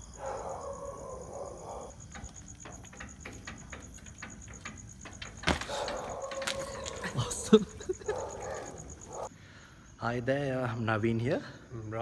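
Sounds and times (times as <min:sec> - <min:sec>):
crickets chirping: 0:00.0 - 0:12.0
light clicks and knocks: 0:01.9 - 0:09.3.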